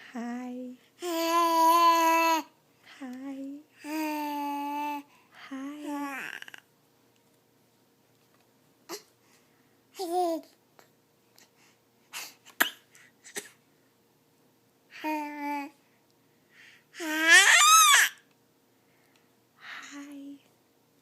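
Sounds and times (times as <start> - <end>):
baby babbling: 1.0 - 2.5, 3.8 - 5.1, 5.8 - 6.6, 10.0 - 10.5, 15.0 - 15.8, 17.0 - 18.2
baby squealing: 17.1 - 18.2.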